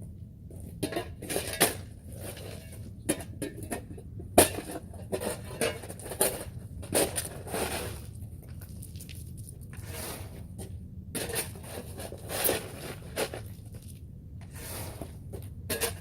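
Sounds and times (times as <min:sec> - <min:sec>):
shoveling concrete rubble: 0:04.4 - 0:10.6, 0:11.2 - 0:16.0.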